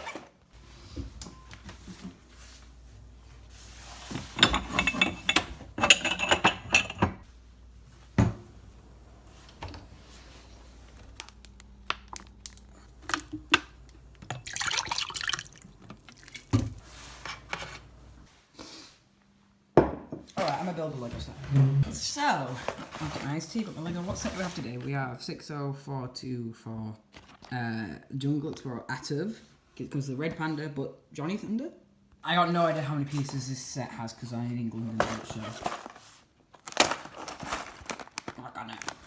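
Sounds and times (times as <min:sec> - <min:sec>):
liquid pouring into glass: 0:14.2 - 0:16.5.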